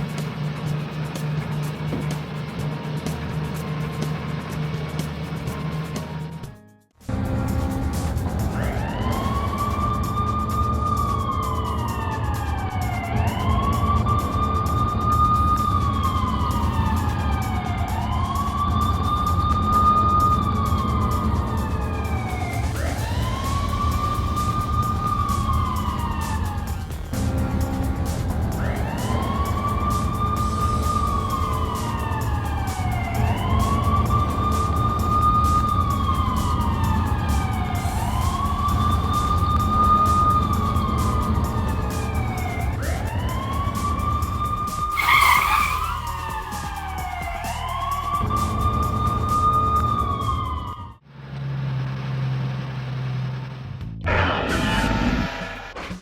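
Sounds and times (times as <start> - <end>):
siren wailing: 8.5 - 51.0.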